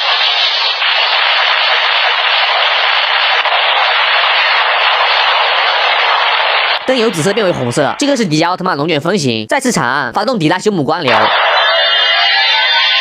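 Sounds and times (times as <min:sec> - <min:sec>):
toy speaker harsh rushing noise: 0:11.1 - 0:13.0.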